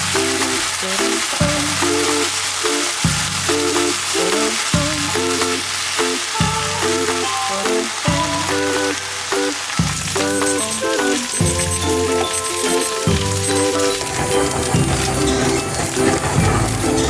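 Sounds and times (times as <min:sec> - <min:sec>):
background music: 0:00.0 - 0:17.0
food sizzling in pan: 0:00.0 - 0:17.0.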